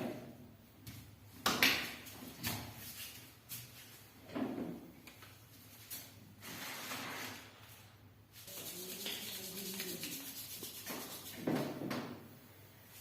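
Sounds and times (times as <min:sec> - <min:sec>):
hands rubbing oiled skin: 0:08.4 - 0:11.4.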